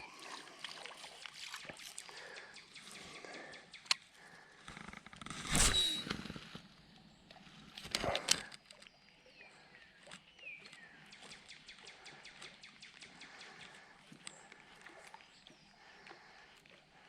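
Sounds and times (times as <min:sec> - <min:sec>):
fishing rod swishes: 0:05.4 - 0:06.2.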